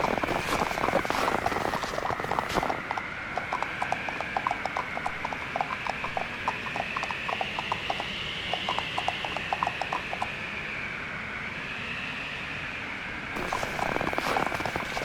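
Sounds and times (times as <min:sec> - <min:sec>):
cartoon hooves clip-clopping: 0:00.0 - 0:10.4, 0:13.4 - 0:15.0.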